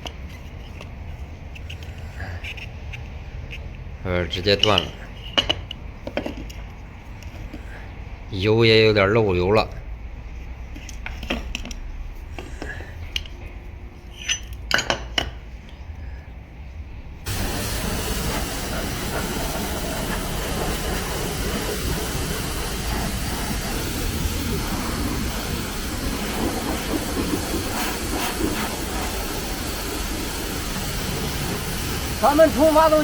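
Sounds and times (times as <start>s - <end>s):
high-pressure water spray hissing: 17.3s - 33.0s.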